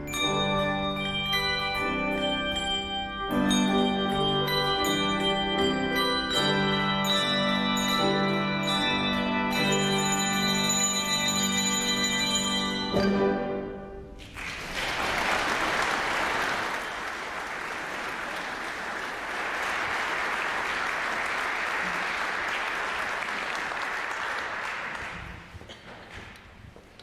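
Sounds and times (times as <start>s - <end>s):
congregation applauding: 14.2s - 26.5s.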